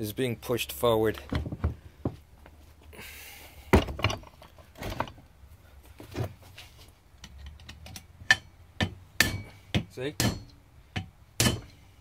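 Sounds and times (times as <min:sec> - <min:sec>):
hammer knocking on metal punch: 0:08.3 - 0:11.8.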